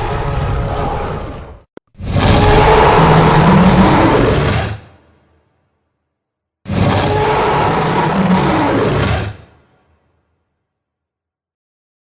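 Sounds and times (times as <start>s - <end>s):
monster roar: 0.0s - 5.1s, 6.7s - 9.6s
low creature growl: 2.2s - 5.0s.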